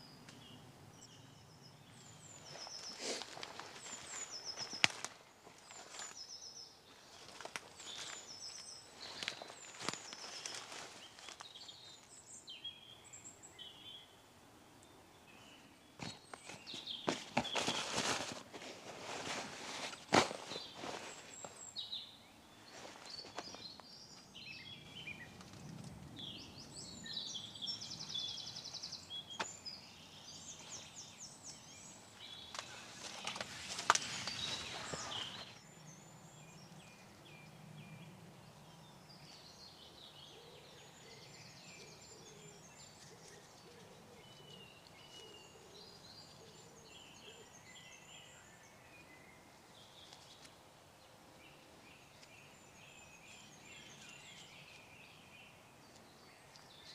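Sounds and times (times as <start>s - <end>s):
songbirds singing: 0.0s - 56.9s
rustling noise: 7.0s - 12.1s, 16.0s - 21.7s, 32.6s - 35.6s.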